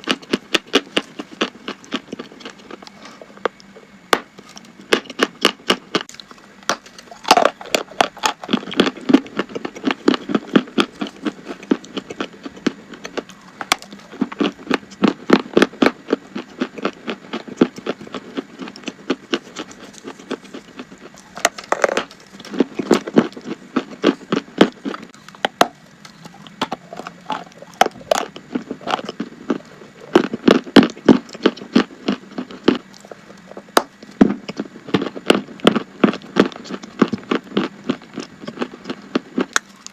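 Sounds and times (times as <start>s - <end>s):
chalk crunching being chewed: 0.0s - 39.9s.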